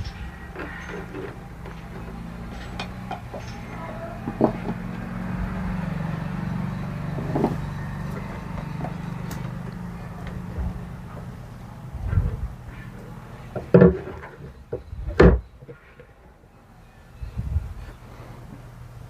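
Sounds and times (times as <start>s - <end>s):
clicks of handling parts: 0.0s - 3.7s
steady low hum: 0.0s - 19.0s.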